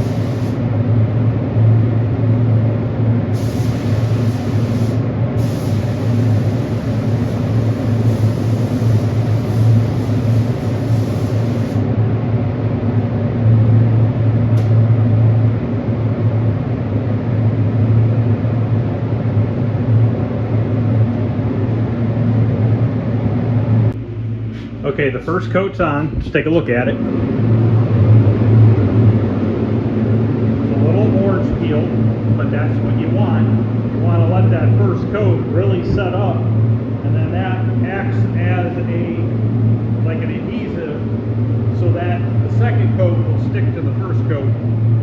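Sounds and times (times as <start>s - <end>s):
paint spray gun hissing: 0.0s - 0.6s, 3.4s - 11.8s
low machine hum: 0.0s - 45.0s.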